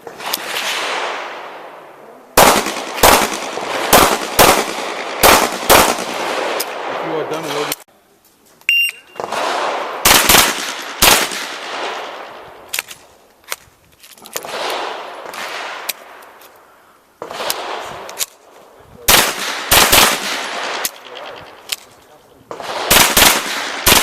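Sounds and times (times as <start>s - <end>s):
pistol shots echoing: 2.4s - 7.7s, 9.2s - 12.4s, 14.4s - 16.2s, 17.2s - 18.2s, 19.1s - 21.7s, 22.5s - 24.0s.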